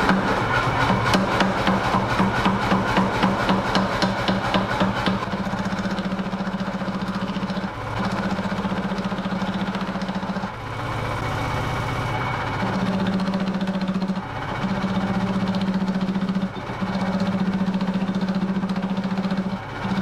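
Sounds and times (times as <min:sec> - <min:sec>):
power hammer blows on steel: 0:00.0 - 0:07.5.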